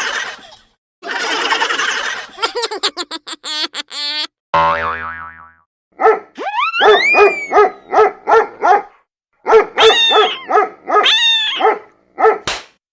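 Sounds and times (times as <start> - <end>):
dog yelping: 6.0 - 8.9, 9.5 - 12.4
small dog barking: 6.0 - 12.5.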